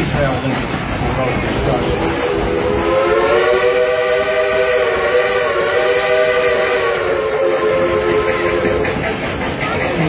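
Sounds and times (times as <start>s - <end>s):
steam locomotive whistle blast: 1.9s - 9.0s.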